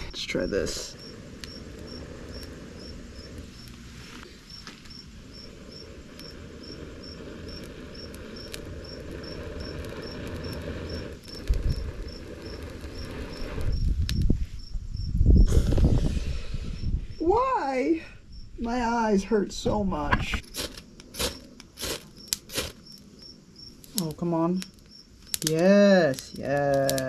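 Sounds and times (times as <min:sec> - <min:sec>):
crickets chirping: 0:00.0 - 0:27.0
breath blown onto coals: 0:15.3 - 0:17.2, 0:20.4 - 0:22.8.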